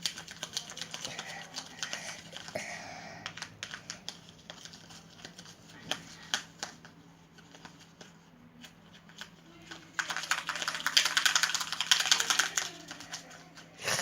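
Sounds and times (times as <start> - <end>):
slime being stirred clicking: 0.0 - 2.6, 9.1 - 13.7.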